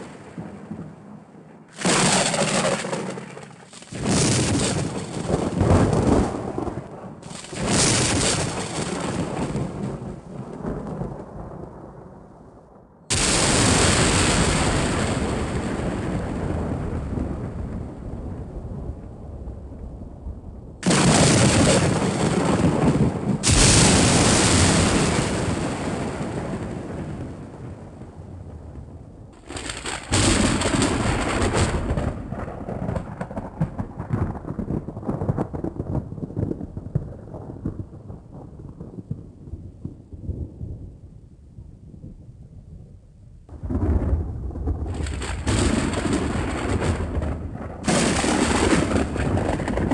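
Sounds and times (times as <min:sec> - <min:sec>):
thunder rumble: 0:00.0 - 0:49.9
loud crack of thunder: 0:01.7 - 0:12.2, 0:13.1 - 0:19.5, 0:20.8 - 0:40.9, 0:43.5 - 0:49.9.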